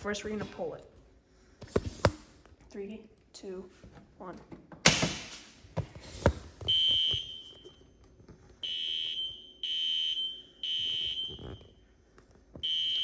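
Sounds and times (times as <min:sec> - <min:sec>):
fire alarm horn blasts: 0:08.6 - 0:11.6, 0:12.6 - 0:13.0.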